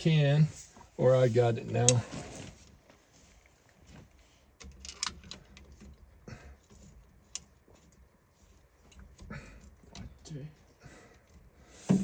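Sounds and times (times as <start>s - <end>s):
faint clicks and light knocks: 2.6s - 12.0s.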